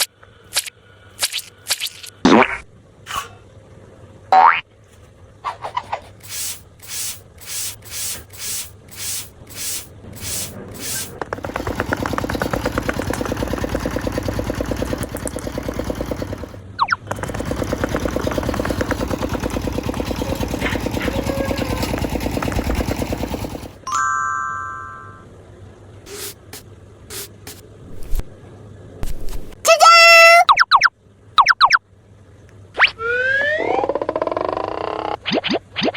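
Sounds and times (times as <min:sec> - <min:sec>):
fast motor-like rattle: 0:05.7 - 0:23.9, 0:26.2 - 0:28.2
falling whistle: 0:32.8 - 0:33.9.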